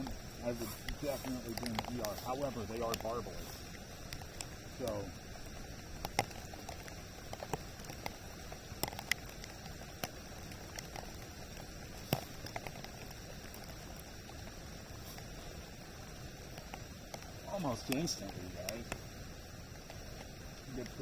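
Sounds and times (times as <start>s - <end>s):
rain taps: 0.0s - 21.0s
steady hiss: 0.0s - 21.0s.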